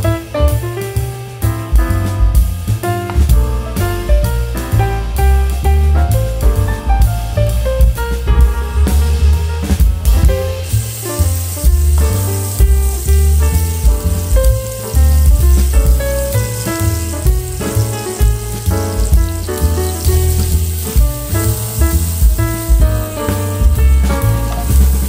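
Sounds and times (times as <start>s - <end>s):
background music with bass and beat: 0.0s - 25.0s
food sizzling in hot oil: 10.0s - 25.0s.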